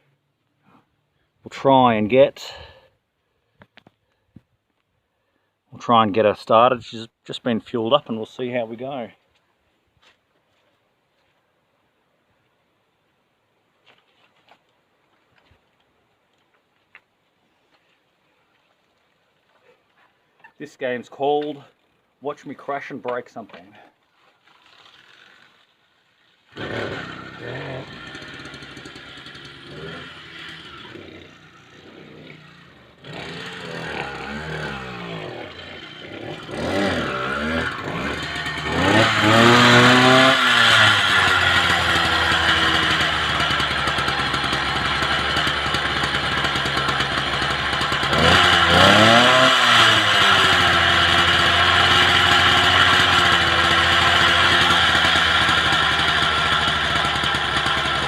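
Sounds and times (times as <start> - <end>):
small two-stroke engine revving: 24.6 - 25.7, 26.4 - 58.0
engine rattling while starting: 26.5 - 58.0.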